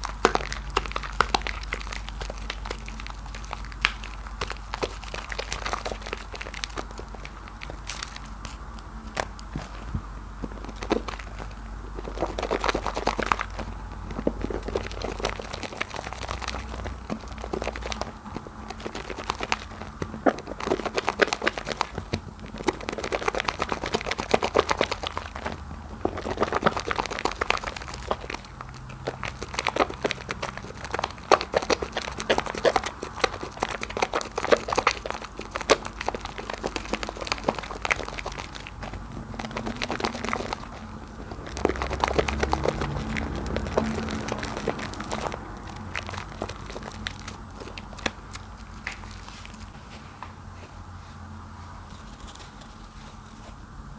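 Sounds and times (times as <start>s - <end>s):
soap foam squishing: 0.0s - 53.6s.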